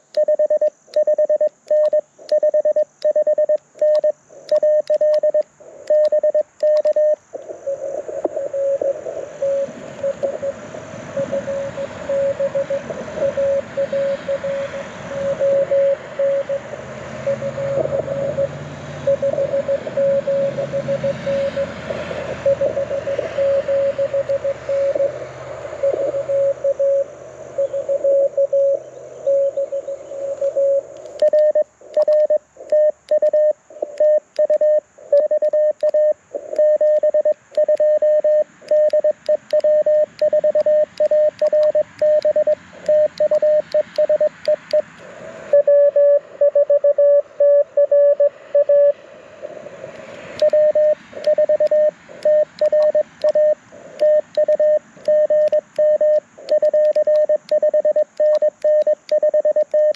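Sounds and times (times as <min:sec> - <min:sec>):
morse code tone: 0:00.0 - 0:21.8, 0:22.4 - 0:25.2, 0:25.8 - 0:44.9, 0:45.5 - 0:49.0, 0:50.3 - 0:59.9
morse key clicks: 0:50.0 - 0:53.4.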